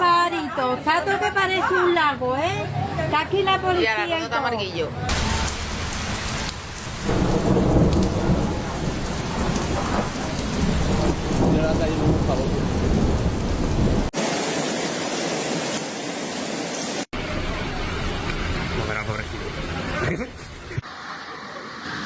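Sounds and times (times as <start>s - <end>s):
heavy rain pouring: 5.1s - 22.0s.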